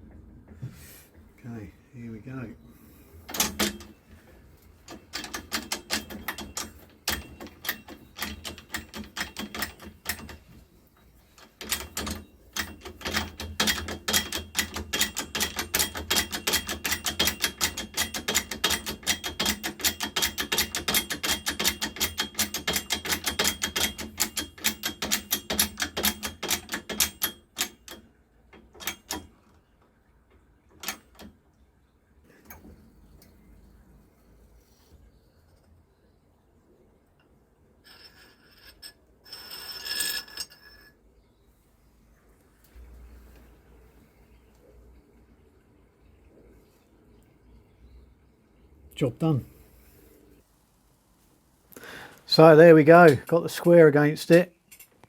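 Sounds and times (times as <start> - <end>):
rapid metallic ratchet clicking: 11.6 - 28.0.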